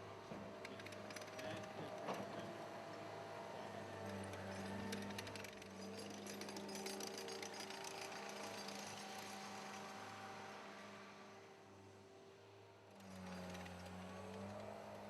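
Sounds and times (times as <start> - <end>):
construction equipment engine running: 0.0 - 11.0
rapid metallic clicking rattle: 0.6 - 2.4, 4.1 - 9.8.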